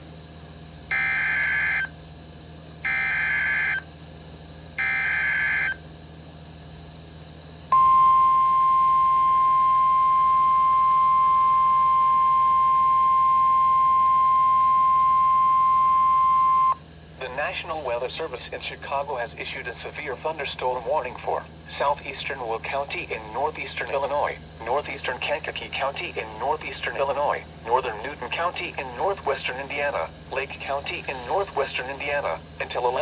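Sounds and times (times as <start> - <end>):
harsh buzzing data bursts: 0.8 - 2.0, 2.8 - 3.9, 4.7 - 5.8, 21.7 - 33.0.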